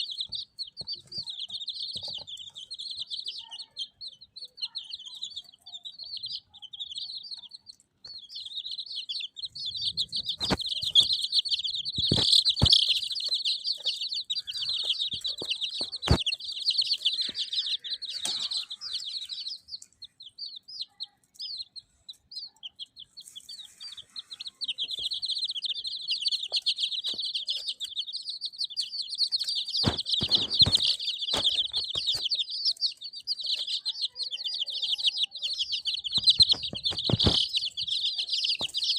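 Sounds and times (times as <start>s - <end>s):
chicks peeping: 0.0s - 38.9s
sharp knocks: 29.8s - 32.2s, 36.2s - 37.6s.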